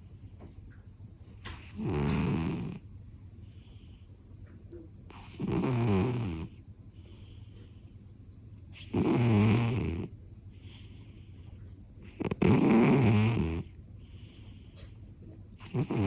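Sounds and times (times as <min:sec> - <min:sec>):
cat snoring: 0:01.4 - 0:02.8, 0:05.1 - 0:08.0, 0:08.7 - 0:15.0, 0:15.6 - 0:16.0.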